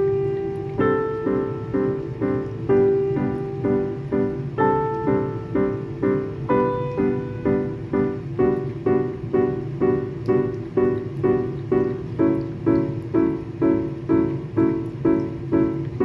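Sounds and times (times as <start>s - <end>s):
gentle piano tune: 0.0s - 16.0s.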